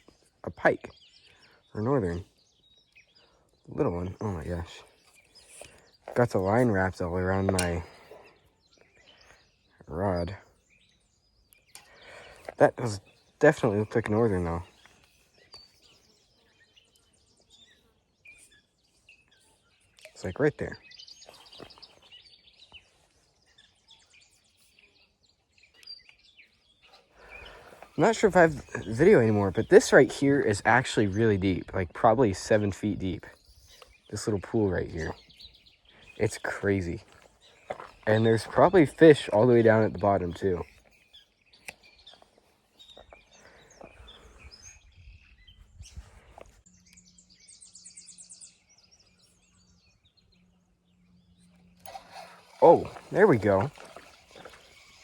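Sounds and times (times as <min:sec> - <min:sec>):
small birds chirping: 0:00.0 - 0:55.0
high bird chirps: 0:32.4 - 0:55.0
fast high bird trill: 0:51.6 - 0:55.0.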